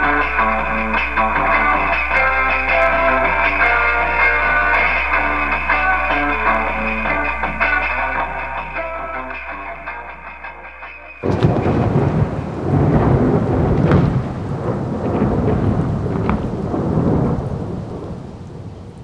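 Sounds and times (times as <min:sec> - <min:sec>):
guitar music: 0:00.0 - 0:12.9
heavy rain: 0:00.0 - 0:19.0
thunder rumbling: 0:00.0 - 0:19.0.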